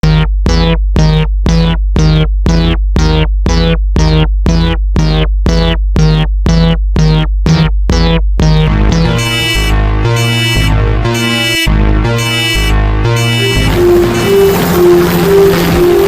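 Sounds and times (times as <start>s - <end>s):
railroad crossing warning bell: 12.2s - 16.0s.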